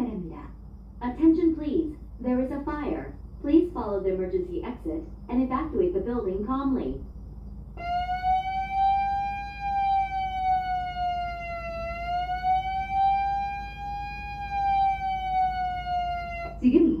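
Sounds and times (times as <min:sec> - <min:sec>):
fire alarm siren wavering tone: 0:07.7 - 0:17.0.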